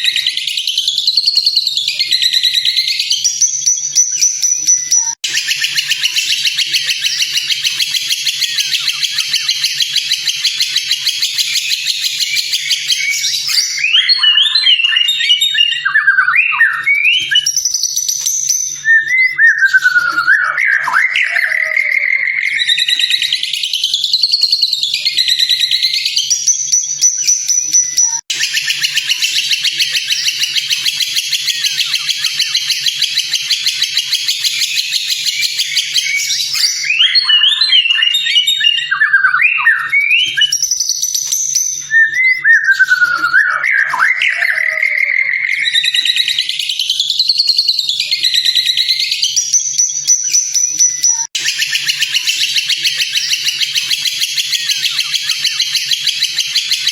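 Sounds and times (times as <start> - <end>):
bird whistled notes: 0.0 - 56.9
bird chattering trills: 2.0 - 15.8, 27.1 - 38.9, 50.8 - 56.9.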